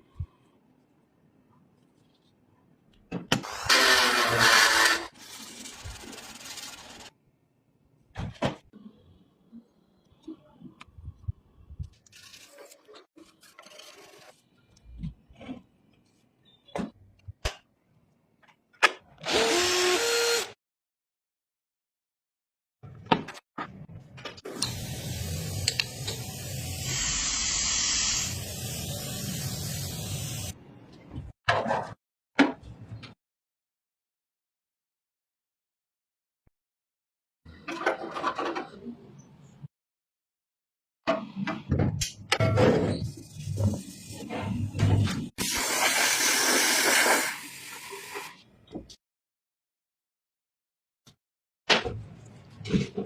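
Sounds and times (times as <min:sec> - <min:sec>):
compressed air spray hissing: 0:24.7 - 0:30.5.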